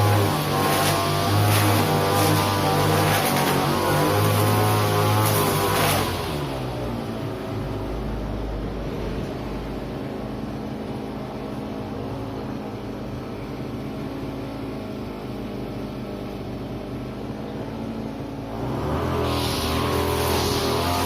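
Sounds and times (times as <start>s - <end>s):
brush cutter engine running: 0.0s - 7.5s, 17.8s - 21.0s.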